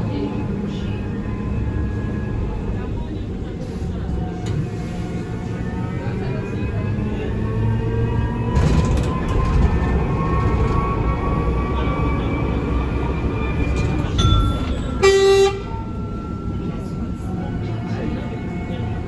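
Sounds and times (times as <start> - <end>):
train rumbling: 0.0 - 19.0
loud pitched horn tone: 14.9 - 15.9.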